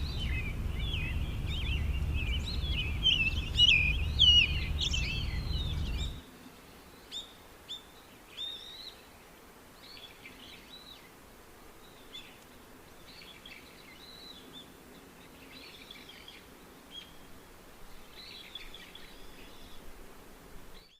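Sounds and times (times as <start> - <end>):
low rumbling noise: 0.0 - 6.2
small birds chirping: 0.0 - 19.9
faint outdoor background: 0.0 - 20.9.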